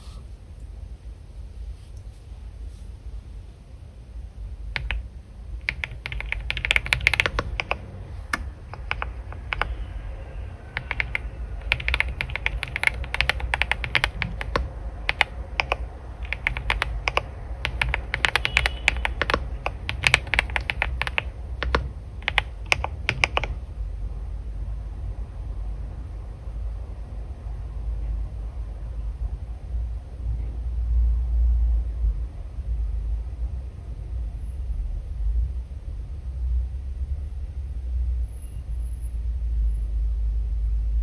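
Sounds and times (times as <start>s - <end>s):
steady low hum: 0.0s - 38.2s
computer keyboard typing: 4.7s - 23.6s.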